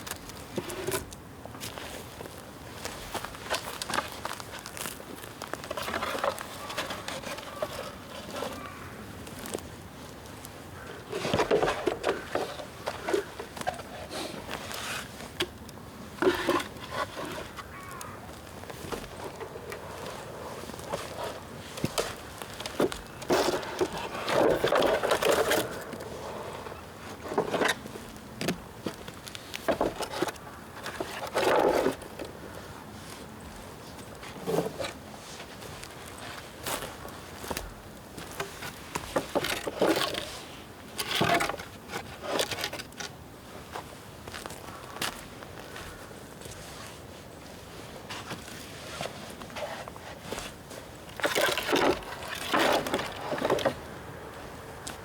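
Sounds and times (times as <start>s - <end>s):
dry bamboo crackling and snapping: 0.0s - 26.0s.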